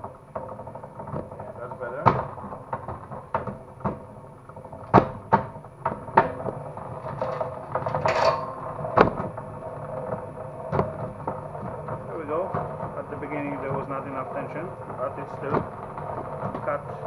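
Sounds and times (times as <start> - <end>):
sharp clacks and knocks: 0.0 - 17.0.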